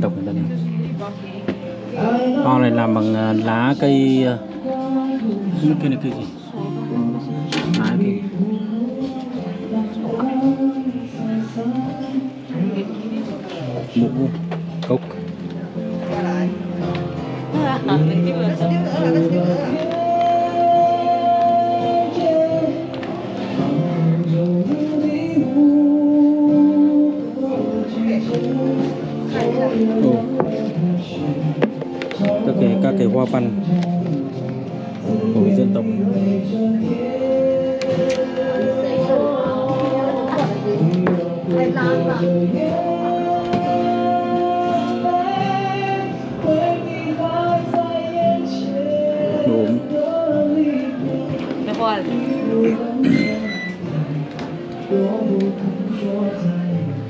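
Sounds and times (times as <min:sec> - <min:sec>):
music: 0:00.0 - 0:57.0
person singing long notes: 0:17.5 - 0:57.0.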